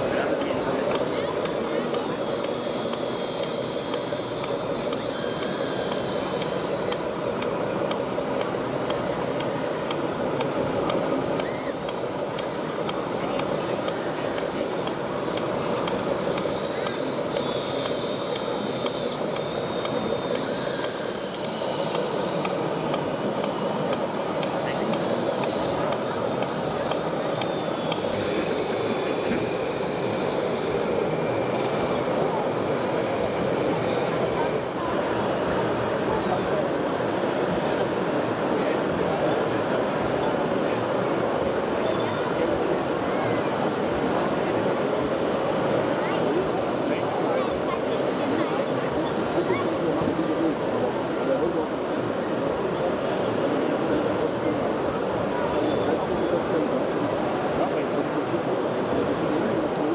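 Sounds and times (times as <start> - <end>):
busy exhibition hall noise: 0.0 - 59.9
model trucks running: 0.0 - 59.9.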